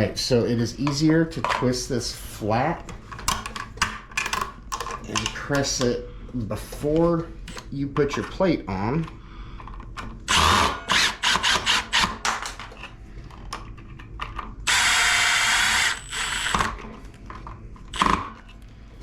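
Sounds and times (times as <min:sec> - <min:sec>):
power driver driving screws: 0:10.3 - 0:12.5, 0:14.7 - 0:16.8, 0:17.9 - 0:18.4.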